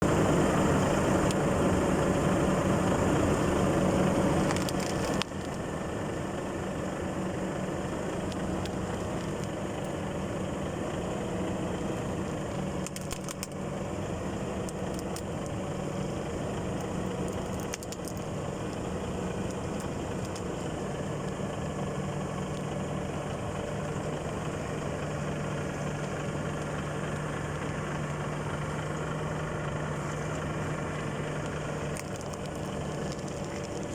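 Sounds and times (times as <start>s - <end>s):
vehicle engine running: 0.0s - 33.9s
toy car cracking under tyre: 4.4s - 5.6s, 12.8s - 13.6s, 17.2s - 18.2s, 31.9s - 33.9s.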